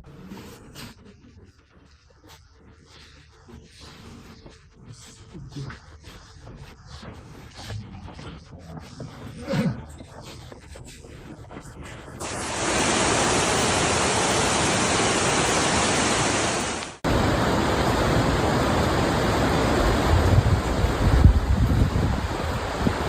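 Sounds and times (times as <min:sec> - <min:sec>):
floodwater rushing: 0:12.2 - 0:23.0.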